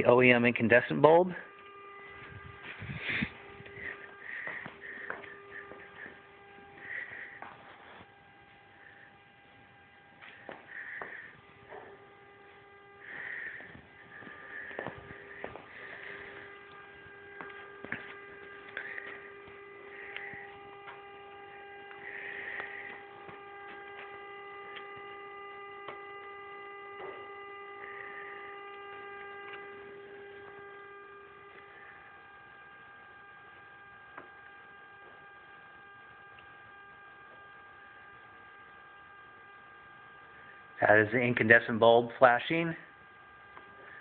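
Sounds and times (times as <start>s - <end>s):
electrical hum: 0.0s - 44.0s
clicks: 21.7s - 25.1s.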